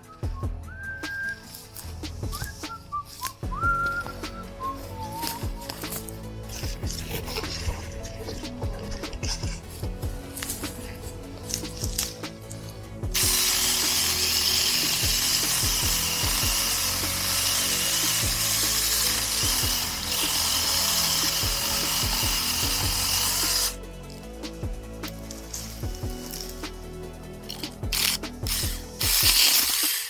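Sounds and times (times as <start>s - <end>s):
background music: 0.0s - 30.0s
electric chainsaw whining: 10.4s - 23.8s, 27.5s - 30.0s.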